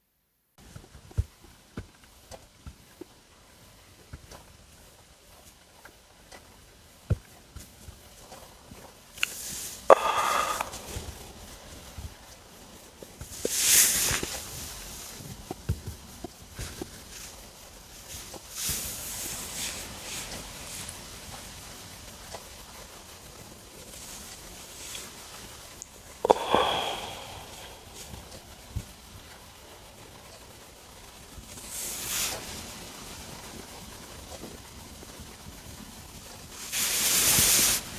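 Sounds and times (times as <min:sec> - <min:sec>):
hissing noises: 0:06.4 - 0:37.9
stomach gurgling: 0:09.2 - 0:11.7, 0:25.8 - 0:28.8.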